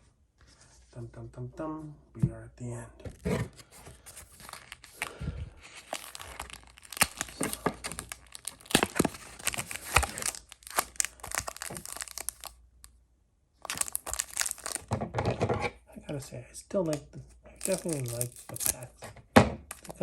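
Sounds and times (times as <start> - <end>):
foil wrapper crinkling and tearing: 3.9 - 12.6, 13.6 - 14.9, 17.6 - 19.0, 19.7 - 20.0.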